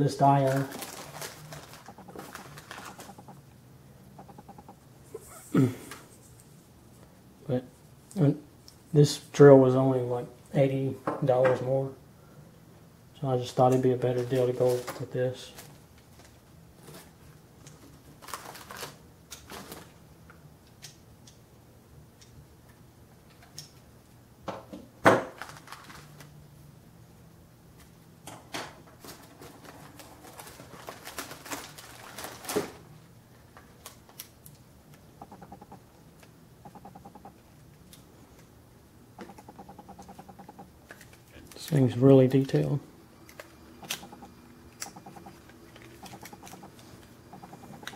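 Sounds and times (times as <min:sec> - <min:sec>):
packaging rustling: 0:00.2 - 0:03.4, 0:17.8 - 0:19.9, 0:25.4 - 0:26.3, 0:29.0 - 0:32.8
clicks and taps: 0:04.2 - 0:04.8, 0:35.2 - 0:35.8, 0:36.6 - 0:37.4, 0:39.2 - 0:40.7, 0:43.4 - 0:47.9.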